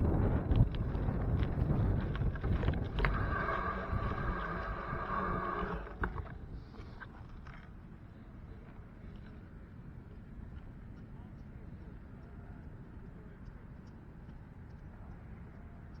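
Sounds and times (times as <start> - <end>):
wind rushing over microphone: 0.0 - 6.7.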